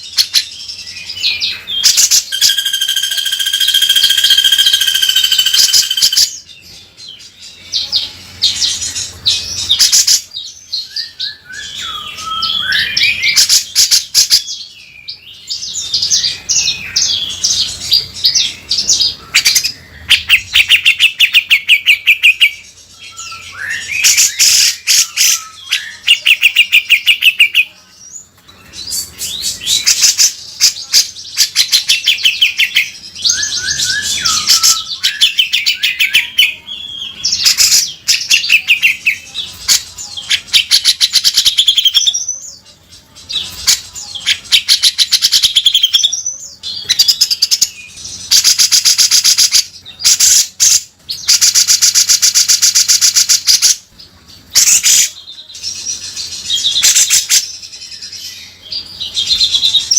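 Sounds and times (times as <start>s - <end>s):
bird singing rasping rattles: 1.2s - 6.4s
bird whistled notes: 2.2s - 6.3s, 10.8s - 13.4s, 33.3s - 36.3s.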